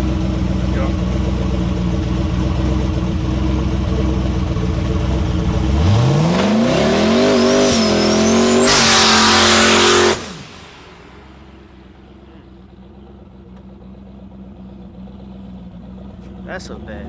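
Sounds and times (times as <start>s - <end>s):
car engine idling and revving: 0.0s - 17.0s
turbo whistle: 6.8s - 10.7s.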